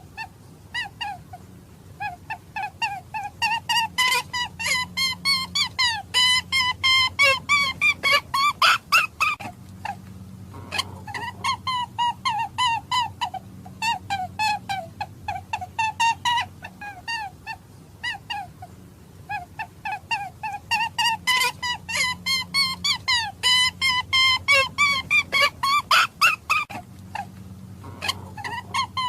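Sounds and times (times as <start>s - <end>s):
hare squealing cries: 2.0s - 9.5s, 10.6s - 18.6s, 19.3s - 29.0s.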